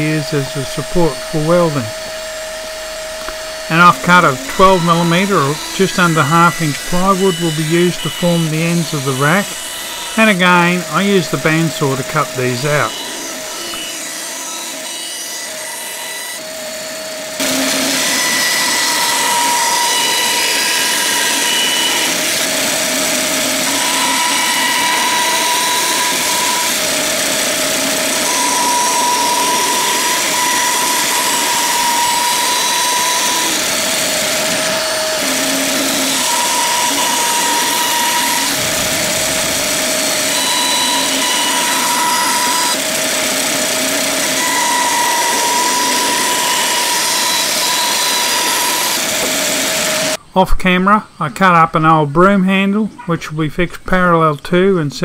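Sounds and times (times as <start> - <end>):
bandsaw cutting plywood: 0.0 - 50.2.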